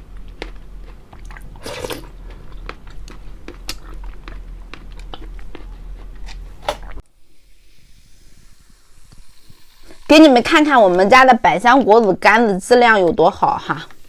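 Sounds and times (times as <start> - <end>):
chewing crunchy food: 0.0 - 6.6.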